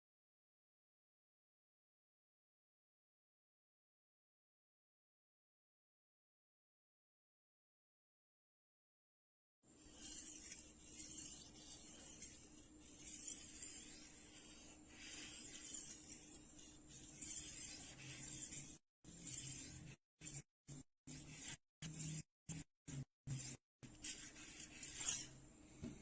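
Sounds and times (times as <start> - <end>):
knife scraping on sharpener: 9.8 - 25.4.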